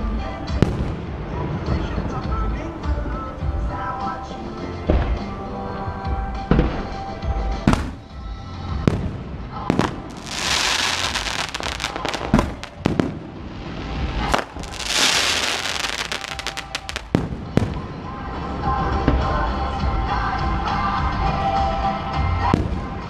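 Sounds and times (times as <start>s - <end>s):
music: 0.0s - 23.0s
fireworks bangs: 7.7s - 8.1s, 8.9s - 18.0s
fireworks crackling: 8.9s - 18.1s.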